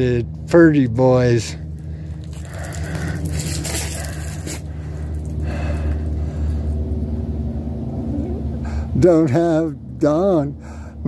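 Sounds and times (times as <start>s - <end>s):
low mechanical hum: 0.0s - 11.0s
scraping rustling handling noise: 1.8s - 5.9s.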